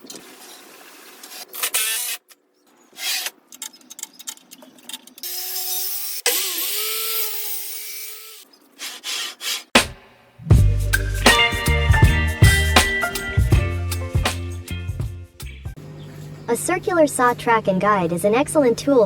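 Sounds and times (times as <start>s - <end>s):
power tools cutting wood: 2.9s - 3.4s, 5.2s - 9.7s.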